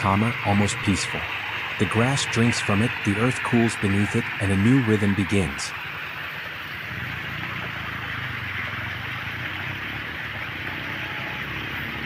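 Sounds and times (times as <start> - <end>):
low engine-like hum: 0.0 - 12.0
stream of water running: 0.0 - 12.0.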